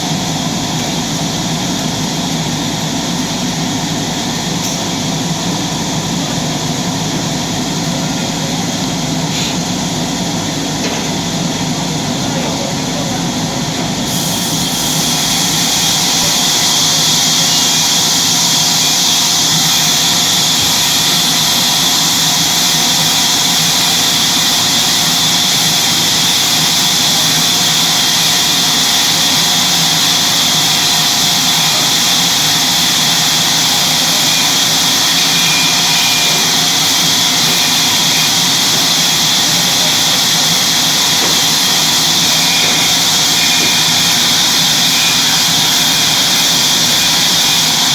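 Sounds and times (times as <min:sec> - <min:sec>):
sawmill saw cutting wood: 0:03.9 - 0:47.9.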